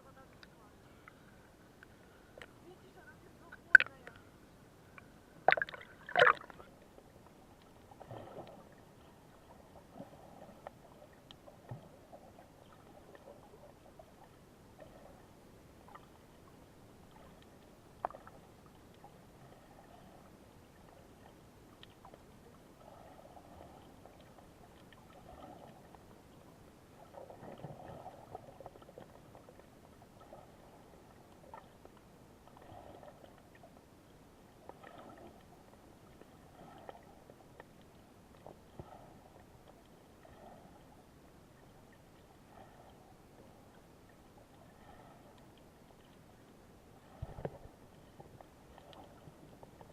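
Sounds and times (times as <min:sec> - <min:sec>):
seawater lapping in small waves: 0:00.0 - 0:49.9
faint clicks: 0:00.3 - 0:02.6, 0:03.5 - 0:04.3.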